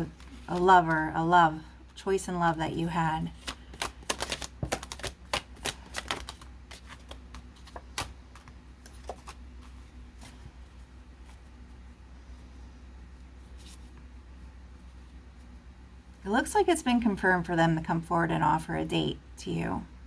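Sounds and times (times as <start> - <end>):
cards being shuffled: 0.0 - 1.0, 3.2 - 10.6.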